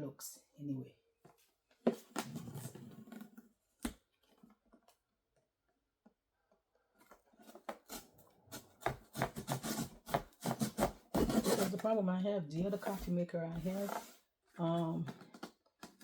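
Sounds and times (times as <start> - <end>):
cardboard box being opened: 9.6 - 11.8.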